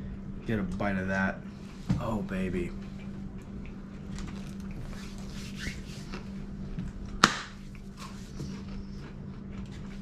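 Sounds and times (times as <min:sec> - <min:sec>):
steady low hum: 0:00.0 - 0:10.0
person chewing: 0:02.8 - 0:10.0.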